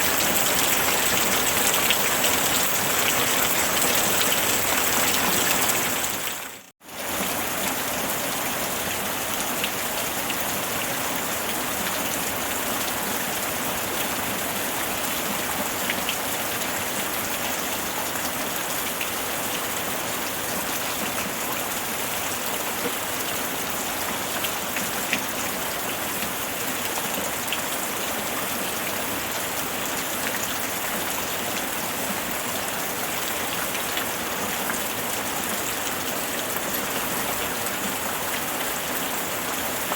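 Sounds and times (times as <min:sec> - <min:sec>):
rain hissing: 0:00.0 - 0:06.7.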